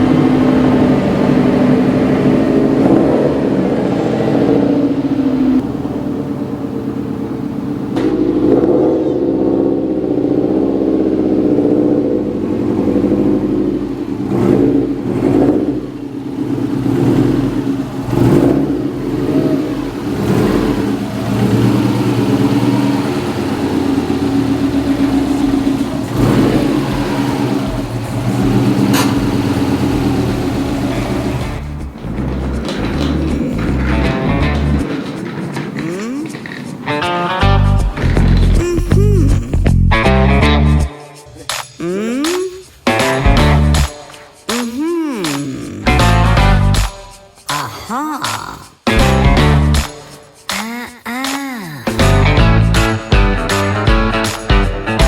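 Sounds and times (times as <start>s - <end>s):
car engine revving: 0.0s - 47.6s, 48.2s - 50.6s, 51.9s - 55.0s.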